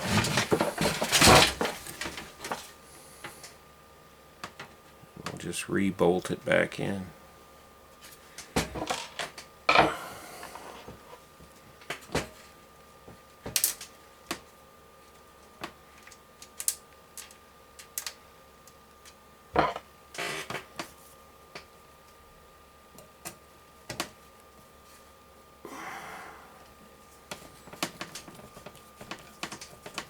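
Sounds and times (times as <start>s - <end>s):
clicks and knocks of fan handling: 22.9s - 24.2s, 27.3s - 30.0s.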